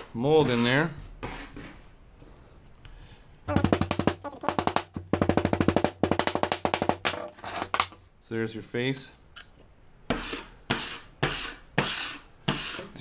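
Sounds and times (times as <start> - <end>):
fast run of sharp knocks: 3.5 - 8.0.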